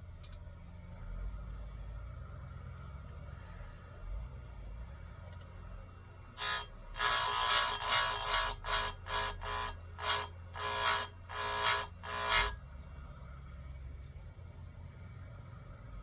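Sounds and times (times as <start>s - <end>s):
grinding wheel bursts: 6.4s - 12.6s.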